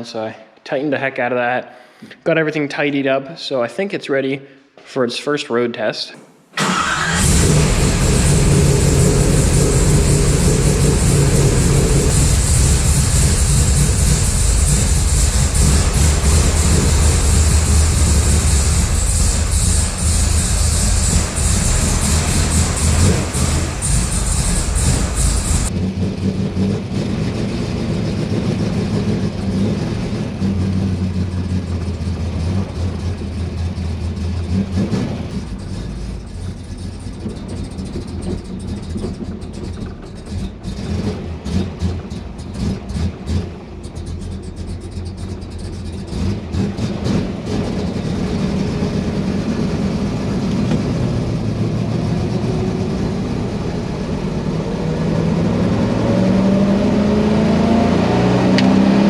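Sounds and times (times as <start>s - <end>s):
car engine driving: 6.6s - 59.0s.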